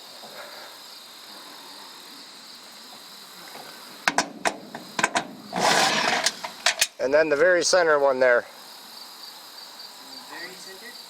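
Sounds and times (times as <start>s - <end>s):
crickets chirring: 0.0s - 11.0s
sharp clicks and knocks: 4.0s - 7.0s.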